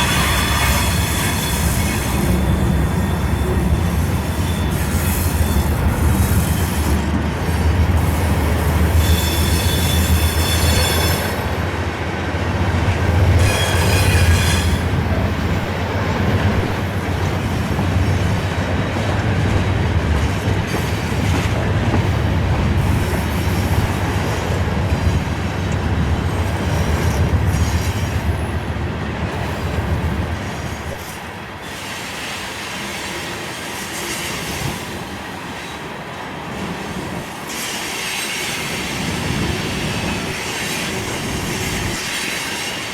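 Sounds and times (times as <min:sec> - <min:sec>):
high wheel squeal: 0:00.0 - 0:11.6, 0:13.3 - 0:15.0
train wheels rumbling on rail: 0:00.0 - 0:42.9.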